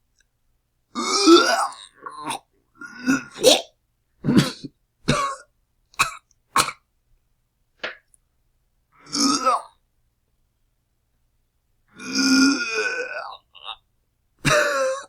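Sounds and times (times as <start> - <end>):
person retching and gagging: 1.0 - 5.4, 9.1 - 9.7, 12.0 - 13.8, 14.4 - 15.0.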